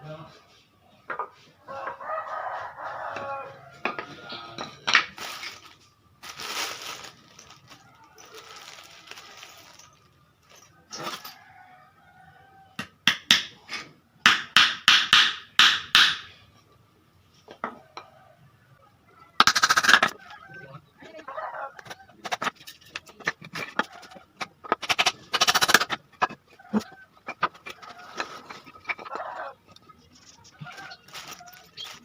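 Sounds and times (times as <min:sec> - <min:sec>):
hammer hitting wooden boards: 0:12.8 - 0:13.6, 0:14.3 - 0:16.3.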